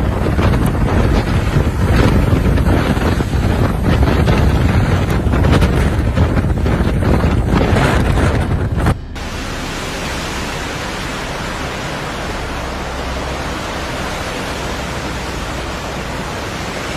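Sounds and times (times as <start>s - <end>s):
steady rushing storm noise: 0.0s - 16.9s
wind buffeting microphone: 0.0s - 16.9s.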